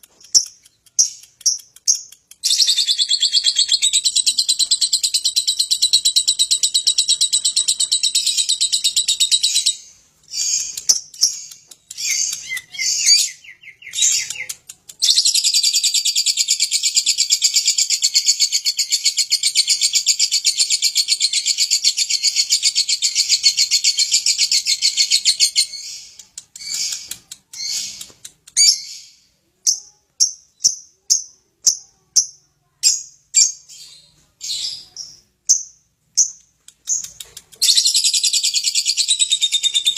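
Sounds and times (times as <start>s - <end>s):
lovebird trilling and chirping: 0.2s - 31.8s, 32.9s - 39.9s.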